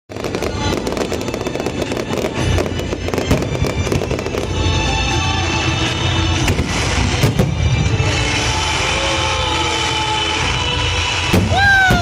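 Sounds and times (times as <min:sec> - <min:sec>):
fireworks bursting and crackling: 0:00.1 - 0:12.0
music playing: 0:00.1 - 0:12.0.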